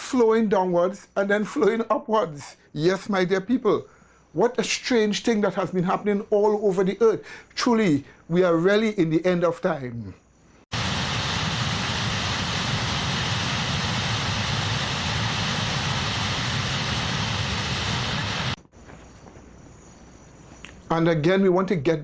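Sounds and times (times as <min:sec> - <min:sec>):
faint hiss: 0:01.0 - 0:05.5, 0:10.2 - 0:18.6
loud rushing noise: 0:10.7 - 0:18.6.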